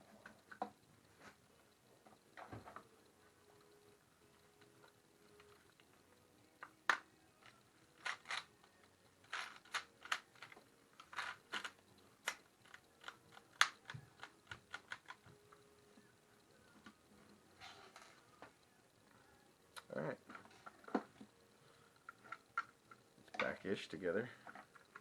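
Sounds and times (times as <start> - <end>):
plastic parts clicking together: 6.6 - 15.6.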